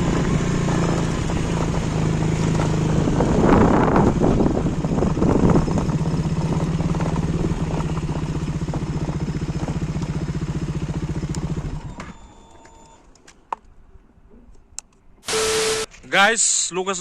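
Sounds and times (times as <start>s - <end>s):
motorcycle engine idling: 0.0s - 12.8s.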